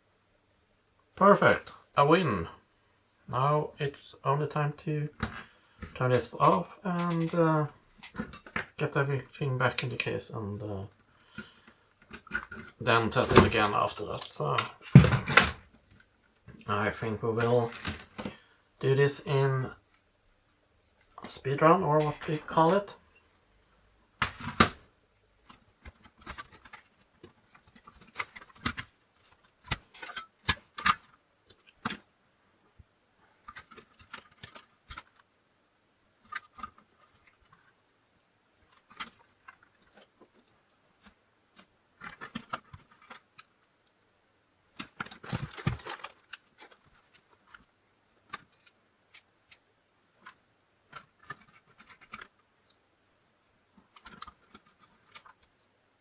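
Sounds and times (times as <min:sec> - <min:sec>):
plastic and metal parts clicking: 0:05.2 - 0:07.4, 0:17.4 - 0:18.4, 0:25.5 - 0:32.0, 0:33.4 - 0:35.6, 0:36.2 - 0:37.7, 0:38.7 - 0:44.0, 0:44.8 - 0:49.6, 0:50.2 - 0:52.8, 0:53.8 - 0:55.7
parts clattering: 0:05.2 - 0:08.8, 0:11.3 - 0:16.7, 0:17.4 - 0:18.4, 0:44.8 - 0:47.7.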